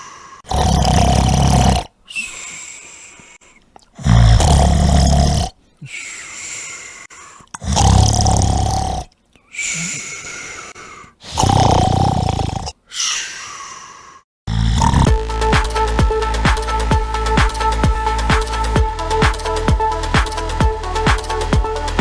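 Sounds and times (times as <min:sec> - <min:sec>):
hissing breaths: 0:00.0 - 0:15.0
man snoring loudly: 0:00.4 - 0:01.9, 0:04.0 - 0:05.6, 0:07.6 - 0:09.1, 0:11.2 - 0:12.8, 0:14.5 - 0:15.2.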